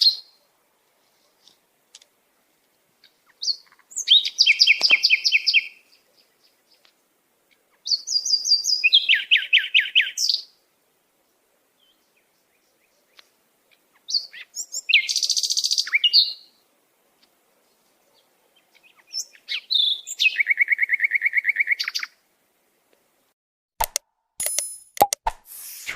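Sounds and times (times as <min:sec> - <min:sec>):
sparrow singing trills: 0:03.0 - 0:06.9, 0:07.7 - 0:10.5, 0:11.8 - 0:16.6, 0:18.1 - 0:22.2.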